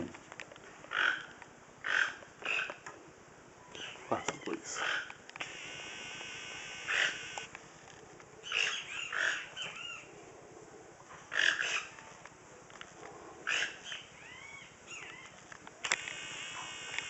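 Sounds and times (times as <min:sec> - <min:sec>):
toucans grunting and croaking: 0:00.8 - 0:03.0, 0:03.7 - 0:07.5, 0:08.4 - 0:10.1, 0:11.2 - 0:12.1, 0:13.4 - 0:17.0.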